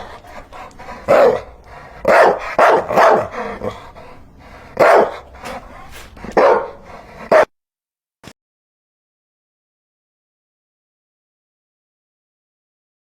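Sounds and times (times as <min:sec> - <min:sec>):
dog barking: 0:01.0 - 0:03.8, 0:04.8 - 0:07.5.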